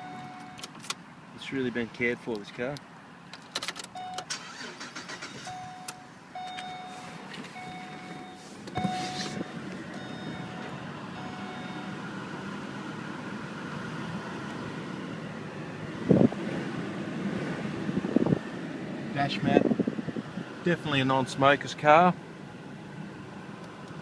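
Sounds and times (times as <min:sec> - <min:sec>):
car warning chime beeping: 0:00.0 - 0:00.7, 0:03.9 - 0:12.1.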